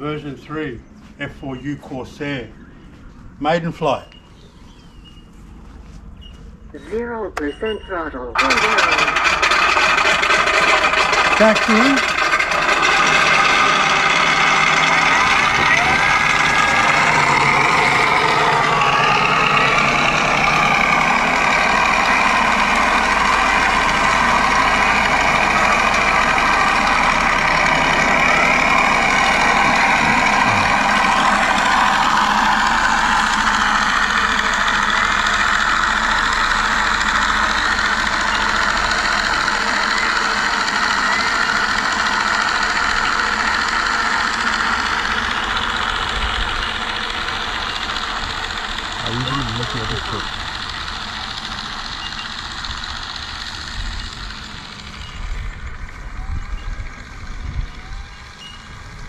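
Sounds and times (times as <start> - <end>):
simulated piston engine sound: 8.4 - 56.0
electric motor and propeller: 8.4 - 59.0.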